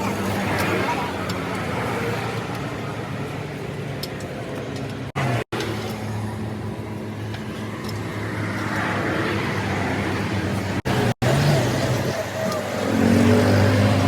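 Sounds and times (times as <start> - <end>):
vehicle engine humming: 0.0 - 14.0.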